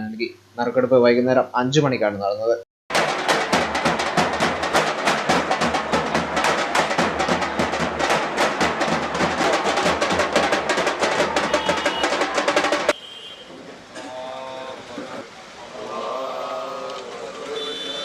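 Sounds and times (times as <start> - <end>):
fast dense drumming: 2.9 - 13.0.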